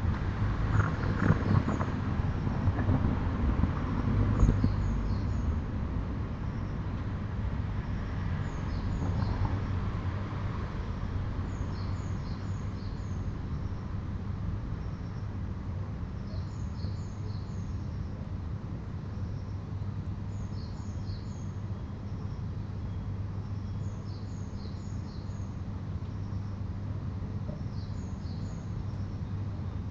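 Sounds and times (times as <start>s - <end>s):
low outdoor rumble: 0.0s - 29.9s
small birds chirping: 27.5s - 29.5s.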